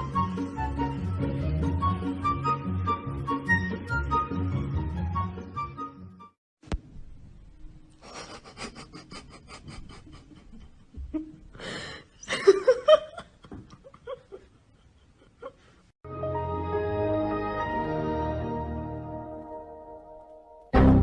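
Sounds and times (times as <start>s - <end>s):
person laughing breathily: 8.0s - 15.9s.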